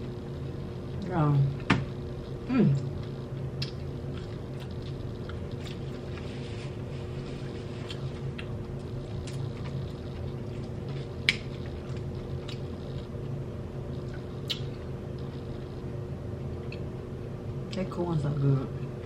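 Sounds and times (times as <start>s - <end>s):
steady low hum: 0.0s - 19.0s
wet chewing and mouth smacks: 3.6s - 6.3s, 7.8s - 13.1s, 14.0s - 15.6s.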